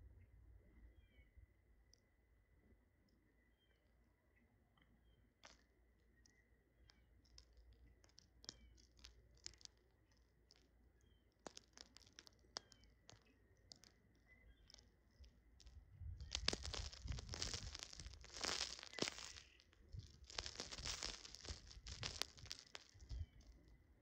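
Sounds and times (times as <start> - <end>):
birds pecking at food: 5.4 - 23.7.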